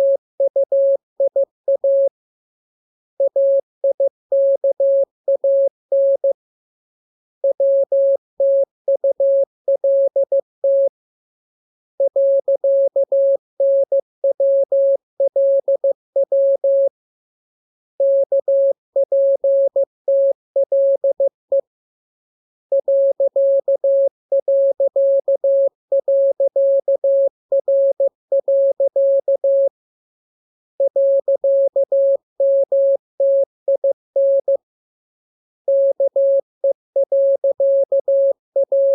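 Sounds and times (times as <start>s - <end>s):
morse code tone: 35.7s - 38.9s.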